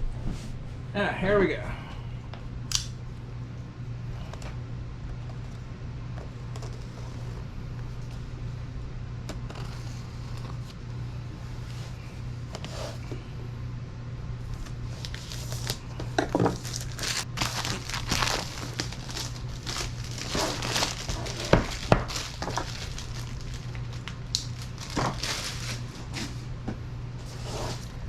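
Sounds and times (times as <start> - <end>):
steady low hum: 0.0 - 28.0
cardboard rustling: 14.6 - 26.4, 27.2 - 28.0.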